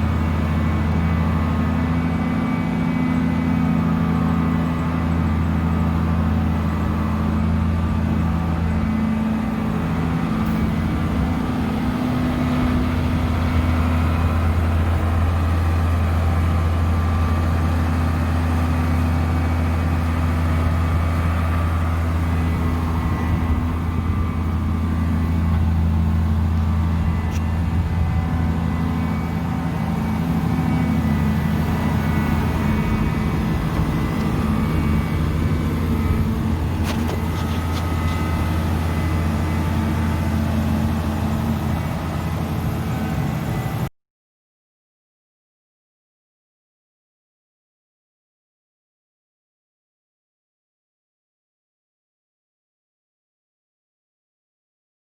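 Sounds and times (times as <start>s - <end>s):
large engine humming steadily: 0.0s - 43.9s.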